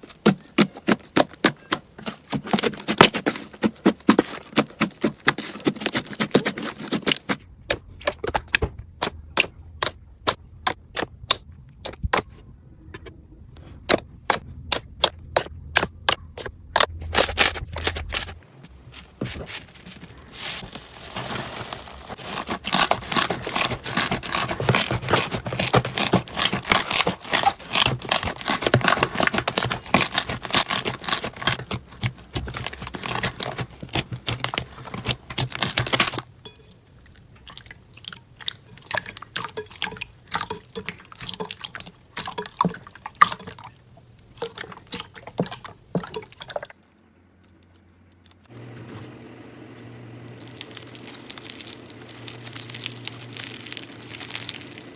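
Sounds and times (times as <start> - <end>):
slime squelching and popping: 19.5 - 46.7, 50.4 - 54.9.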